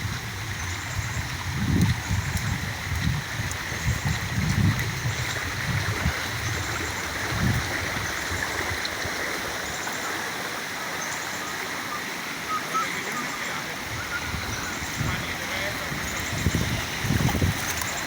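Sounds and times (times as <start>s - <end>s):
floodwater rushing in a stream: 0.0s - 18.0s
low gusty rumbles: 13.8s - 17.7s.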